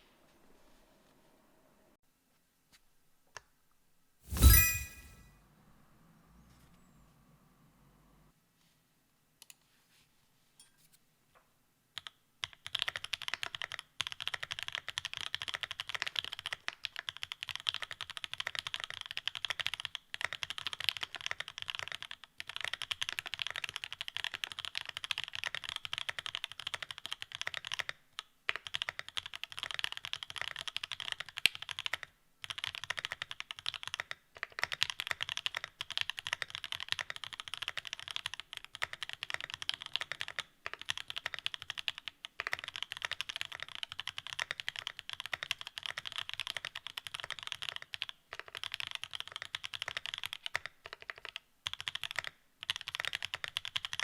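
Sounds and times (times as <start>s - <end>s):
fast typing on mechanical keyboard: 12.0s - 54.0s.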